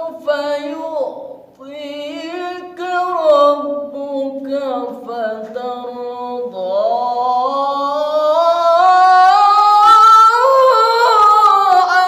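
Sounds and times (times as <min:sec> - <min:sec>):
man reciting melodically: 0:00.0 - 0:12.0.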